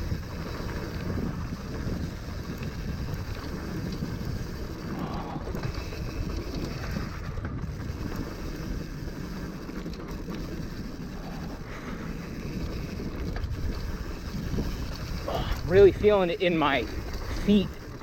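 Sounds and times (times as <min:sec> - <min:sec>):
wind on microphone: 0:00.0 - 0:08.7
bike tyres and frame chattering: 0:00.0 - 0:18.0.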